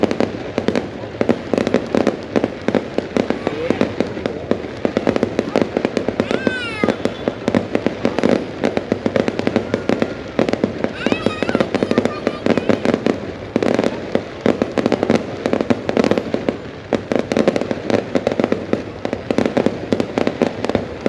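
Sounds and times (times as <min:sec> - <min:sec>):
fireworks cracking and popping: 0:00.0 - 0:21.0
falling firework whistle: 0:09.2 - 0:13.1.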